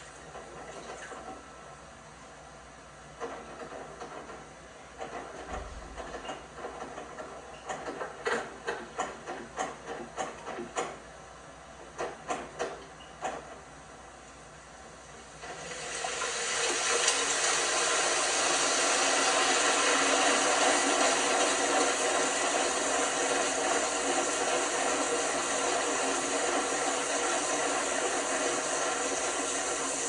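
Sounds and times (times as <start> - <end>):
water rushing into drum: 15.4 - 30.0.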